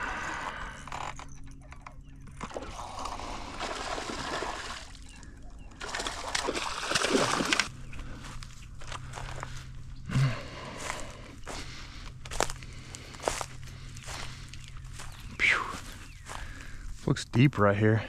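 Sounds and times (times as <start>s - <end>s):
pond water splashing: 2.4s - 7.7s.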